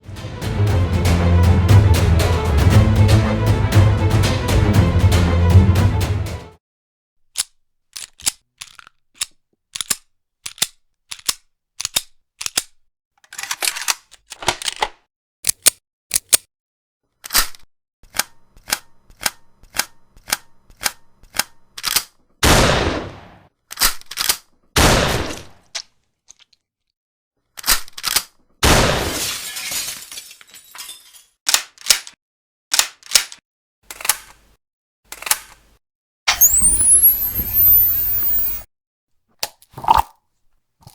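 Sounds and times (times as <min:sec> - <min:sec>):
sliding rasps: 0:07.3 - 0:14.4
gun reloading metallic clicks: 0:07.3 - 0:16.5, 0:32.7 - 0:34.4, 0:36.3 - 0:38.6
rising whistle: 0:36.3 - 0:38.7.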